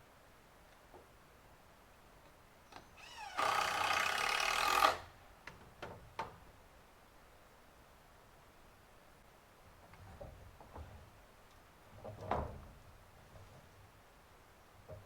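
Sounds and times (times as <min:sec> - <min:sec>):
power tool spinning: 0:03.0 - 0:05.0.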